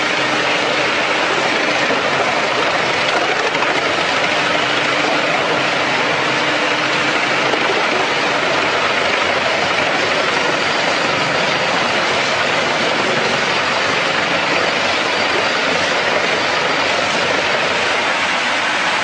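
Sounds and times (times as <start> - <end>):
wood chipper running: 0.0 - 19.0.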